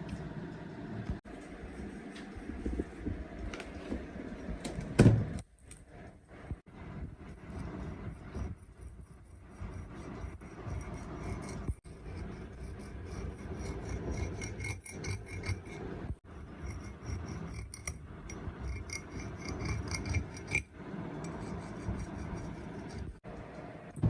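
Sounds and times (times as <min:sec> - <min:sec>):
metal being filed by hand: 0:07.2 - 0:23.2.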